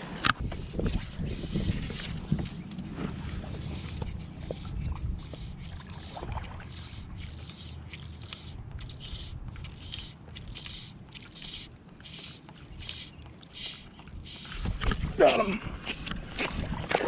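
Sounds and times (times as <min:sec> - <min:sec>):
river water rumbling: 0:00.0 - 0:08.7, 0:14.5 - 0:17.0.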